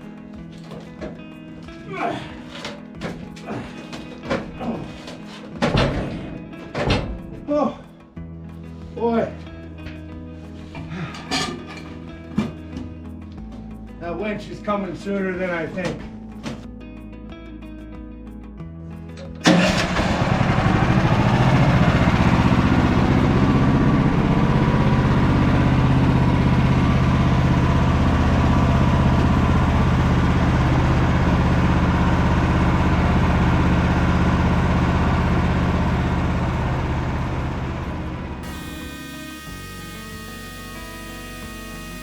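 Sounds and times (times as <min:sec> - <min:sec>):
music: 0:00.0 - 0:20.5, 0:38.0 - 0:42.0
engine starting and running: 0:19.2 - 0:42.0.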